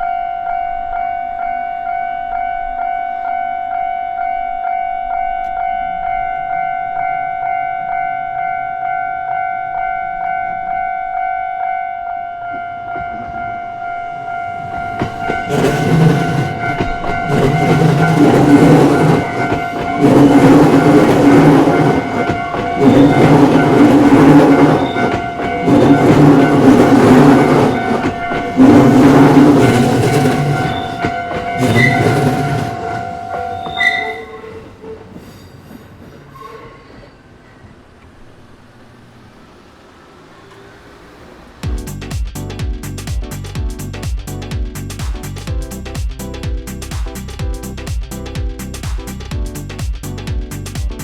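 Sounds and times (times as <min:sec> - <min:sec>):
level crossing bell ringing: 0:00.0 - 0:34.5
train wheels clattering: 0:12.5 - 0:38.5.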